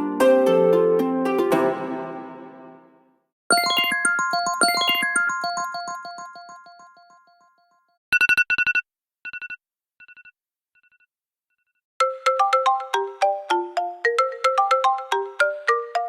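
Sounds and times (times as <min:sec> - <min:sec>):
high electronic beeps: 0:03.5 - 0:05.9
keyboard-like ringtone melody: 0:03.5 - 0:07.8, 0:12.0 - 0:16.0
melodic ringtone: 0:03.5 - 0:07.8, 0:12.0 - 0:16.0.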